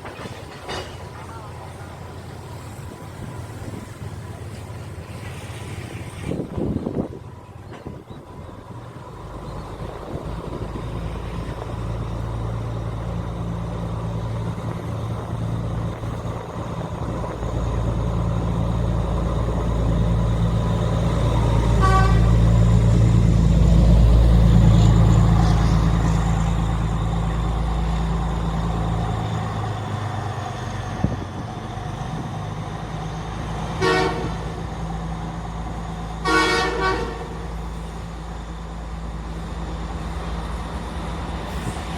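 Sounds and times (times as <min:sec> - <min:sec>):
diesel train engine passing: 0:00.0 - 0:41.9
train horn toots: 0:21.7 - 0:22.5, 0:33.8 - 0:34.6, 0:36.2 - 0:37.6.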